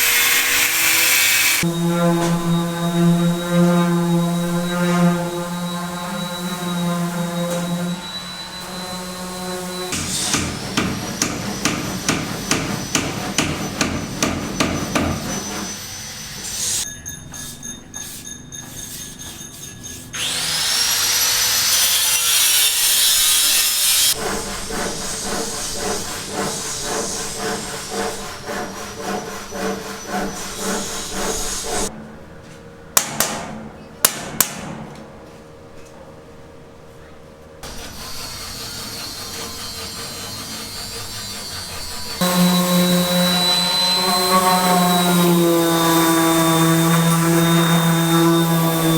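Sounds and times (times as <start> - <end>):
power tool whining: 0.0 - 16.9, 20.1 - 31.9, 37.6 - 48.9
hammer blows: 0.0 - 20.0.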